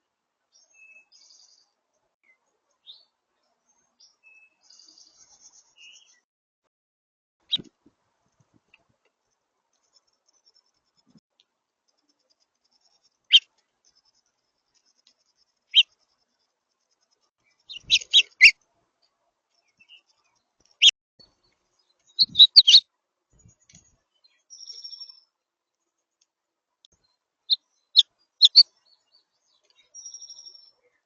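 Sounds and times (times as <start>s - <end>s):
songbird chip notes: 27.5s - 30.7s.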